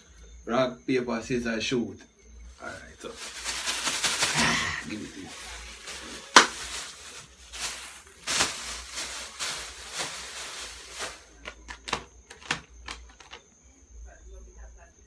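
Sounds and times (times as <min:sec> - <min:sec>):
plastic wrapping rustling: 0:02.5 - 0:13.4.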